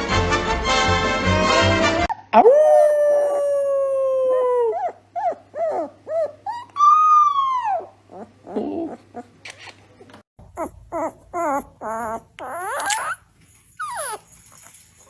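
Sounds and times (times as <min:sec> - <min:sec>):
dog howling: 0:02.4 - 0:09.0, 0:10.6 - 0:13.2
dog yelping: 0:04.4 - 0:09.4, 0:10.4 - 0:14.4.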